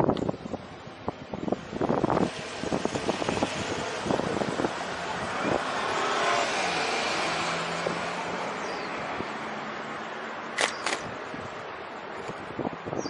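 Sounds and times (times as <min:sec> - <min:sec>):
passing vehicle hum and tyre noise: 0:00.0 - 0:13.0
sharp clicks: 0:10.6 - 0:11.1.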